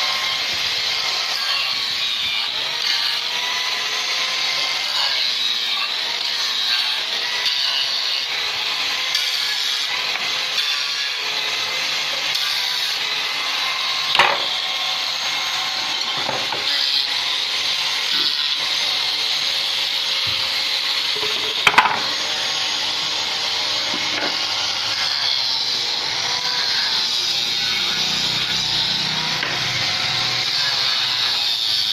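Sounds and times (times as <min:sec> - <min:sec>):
tool scraping wood: 0:14.0 - 0:14.6, 0:15.8 - 0:17.0, 0:20.2 - 0:22.6, 0:23.7 - 0:25.1.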